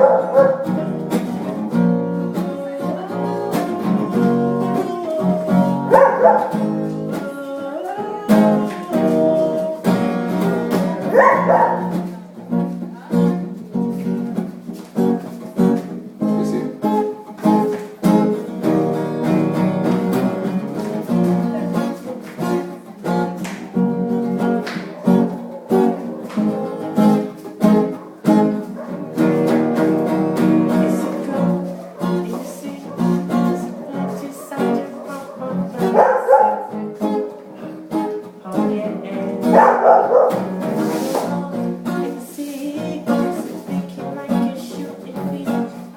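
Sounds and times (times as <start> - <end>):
dog barking: 0.0 - 0.9, 5.6 - 6.8, 11.0 - 12.1, 24.4 - 26.8, 27.8 - 29.3, 30.6 - 37.8, 39.4 - 41.3
plucked guitar music: 0.0 - 45.9.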